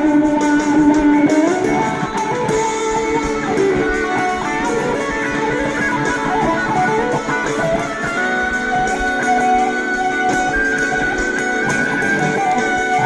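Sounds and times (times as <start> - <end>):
overdriven electric guitar lead: 0.0 - 13.0.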